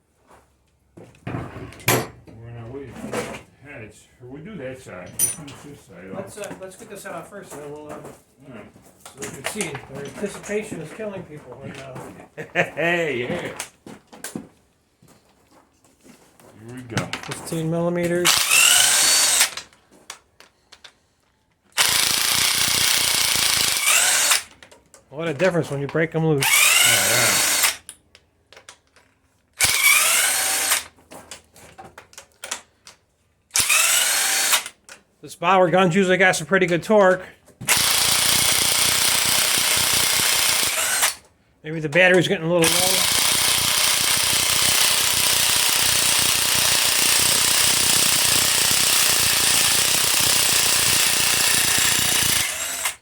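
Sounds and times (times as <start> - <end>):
impact wrench whining: 18.1 - 19.7, 21.7 - 24.6, 26.4 - 27.9, 29.6 - 31.0, 33.5 - 34.8, 37.6 - 41.3, 42.6 - 53.0.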